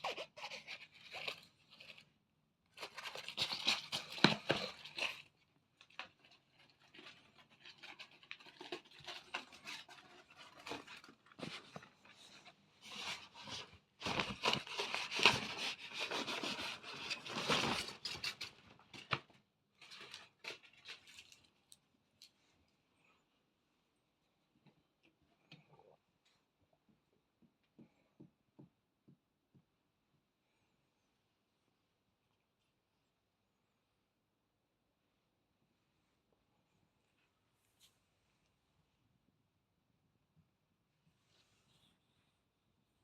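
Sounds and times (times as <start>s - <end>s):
cat tunnel rustling and scraping: 6.0s - 19.1s.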